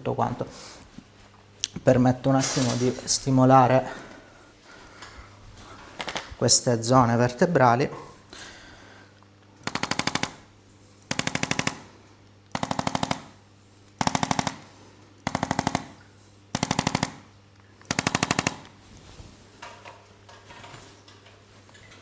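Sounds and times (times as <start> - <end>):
rapid mechanical taps: 9.6 - 11.9, 12.5 - 18.8.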